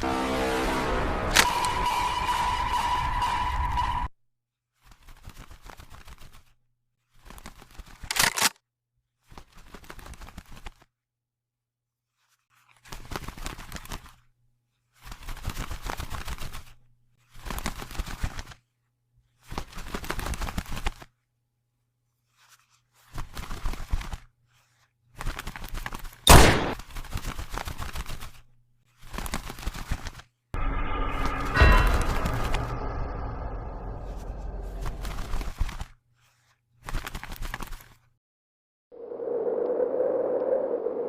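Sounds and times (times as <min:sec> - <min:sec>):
loud sharp bang: 0:30.6 - 0:35.3.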